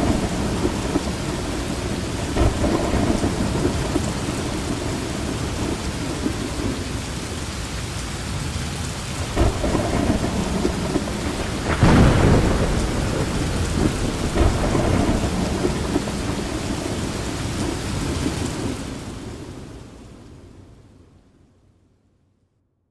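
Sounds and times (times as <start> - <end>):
rumbling thunder: 0.0 - 6.9, 9.2 - 19.6
heavy rain falling: 0.0 - 20.9.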